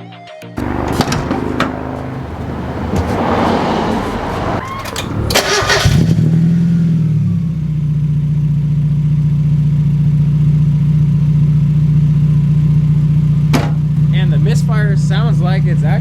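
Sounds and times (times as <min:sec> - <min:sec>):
car engine starting and idling: 0:00.6 - 0:06.9.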